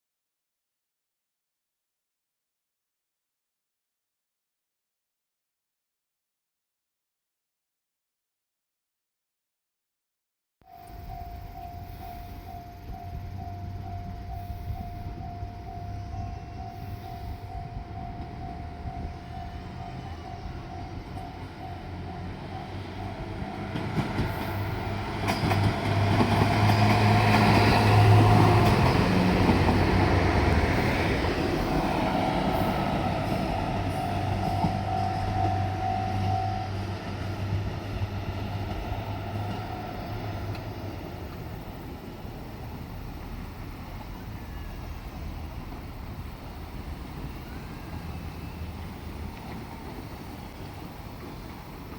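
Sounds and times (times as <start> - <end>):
electronic crossing bell dinging: 10.7 - 24.6
diesel train passing: 10.7 - 51.9.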